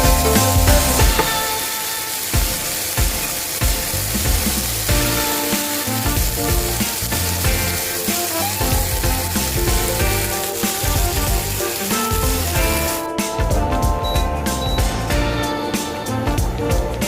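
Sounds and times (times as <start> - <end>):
food sizzling in a pan: 0.0 - 13.2
background music: 0.0 - 17.0.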